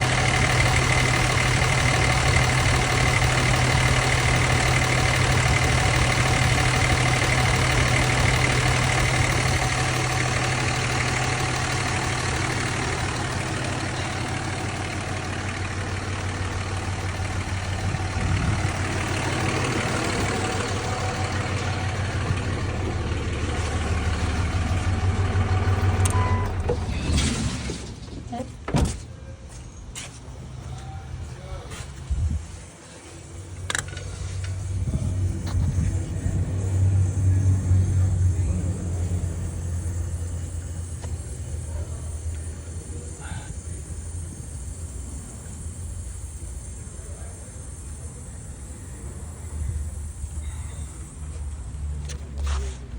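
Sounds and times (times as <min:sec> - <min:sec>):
boat engine running: 0:00.0 - 0:27.1
high whistle: 0:26.1 - 0:26.7.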